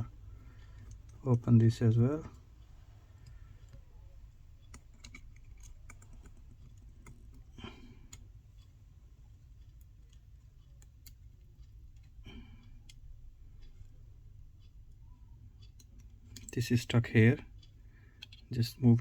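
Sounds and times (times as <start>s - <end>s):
low steady hum: 0.0s - 19.0s
small tools clicking on metal: 4.6s - 7.4s.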